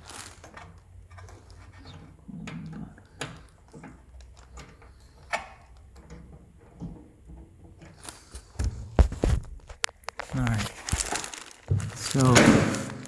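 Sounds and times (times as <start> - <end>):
plastic parts clicking: 9.6 - 13.0.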